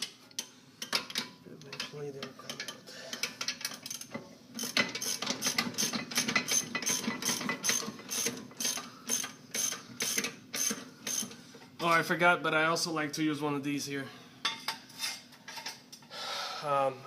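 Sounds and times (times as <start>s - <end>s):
ratchet wrench clicking: 3.8s - 11.3s.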